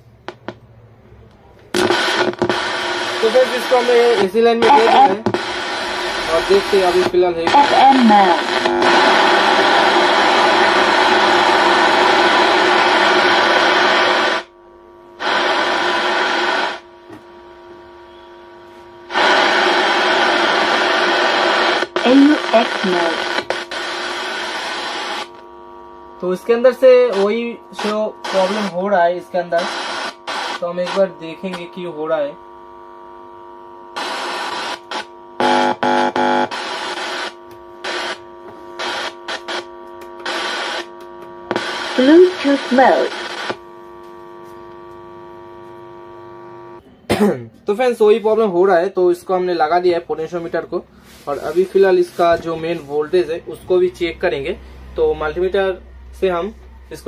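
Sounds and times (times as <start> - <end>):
faint hum: 0.0 - 57.0
harsh distorted speaker noise: 1.7 - 14.6, 15.2 - 57.0
choppy pitched tone from speaker: 1.8 - 15.7.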